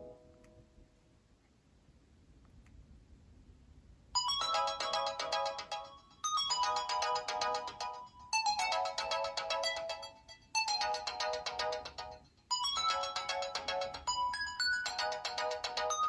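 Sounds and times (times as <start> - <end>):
phone ringtone melody: 4.2 - 16.0.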